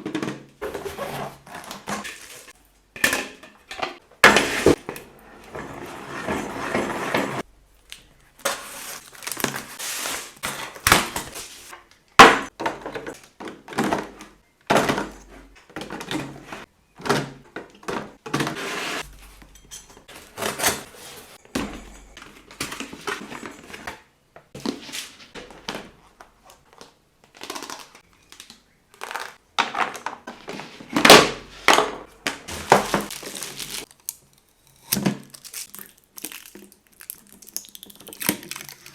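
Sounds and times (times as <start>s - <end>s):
plastic containers clunking: 0.0s - 7.5s, 12.2s - 26.9s, 29.0s - 33.8s
rustling: 32.3s - 33.9s.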